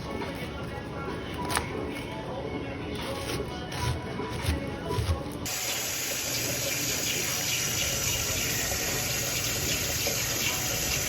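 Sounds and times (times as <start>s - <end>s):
water running from faucet: 5.5s - 11.0s.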